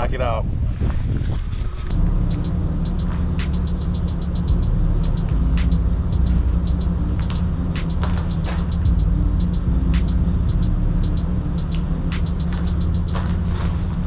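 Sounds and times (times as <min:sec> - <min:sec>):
truck engine rumbling: 0:01.9 - 0:13.4.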